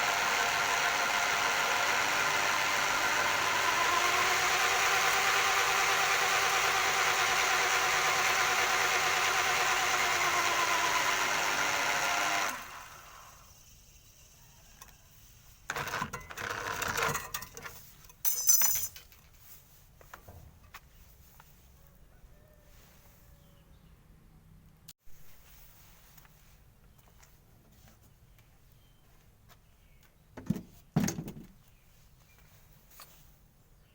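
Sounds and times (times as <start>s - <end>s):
motor running with whining hum: 0.0s - 13.6s.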